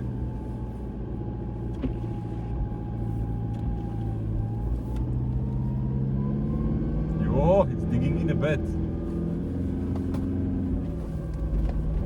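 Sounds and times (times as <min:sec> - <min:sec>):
engine low rumble: 0:00.0 - 0:12.0.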